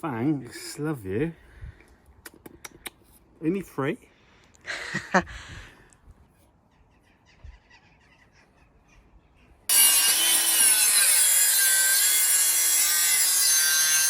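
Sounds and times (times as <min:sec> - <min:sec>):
power saw cutting wood: 0:09.7 - 0:14.0.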